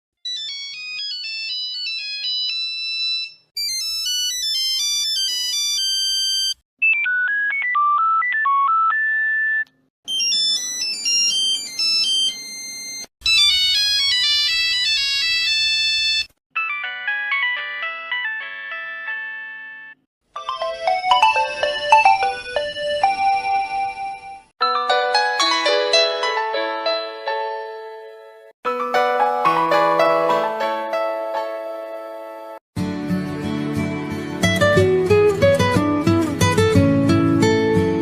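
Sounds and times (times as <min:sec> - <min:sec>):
mobile phone ringtones: 0:00.3 - 0:13.8, 0:16.1 - 0:25.7.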